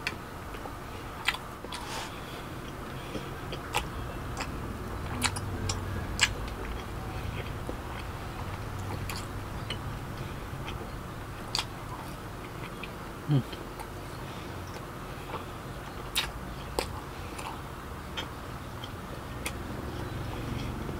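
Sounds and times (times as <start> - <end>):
chewing and biting food: 0.0 - 20.9
low sound rising in pitch: 3.4 - 11.9.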